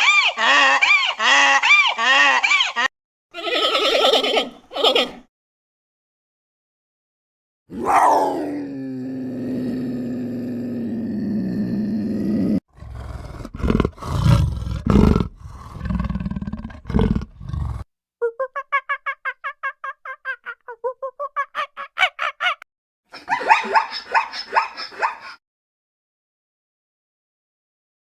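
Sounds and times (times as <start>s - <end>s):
deep roars and growls: 7.7s - 17.8s.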